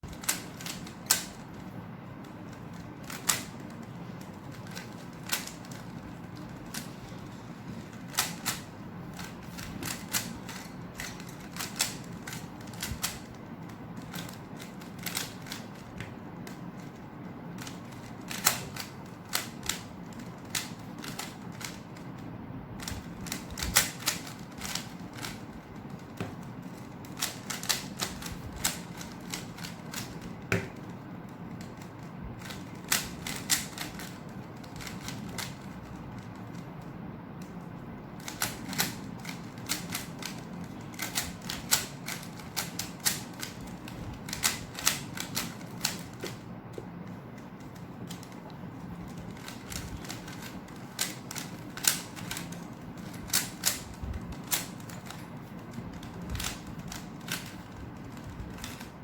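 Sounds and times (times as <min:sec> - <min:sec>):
steady low hum: 0:00.0 - 0:59.0
plastic puzzle cube clicking: 0:00.1 - 0:01.6, 0:02.5 - 0:07.2, 0:07.8 - 0:13.4, 0:17.6 - 0:22.0, 0:31.6 - 0:35.6.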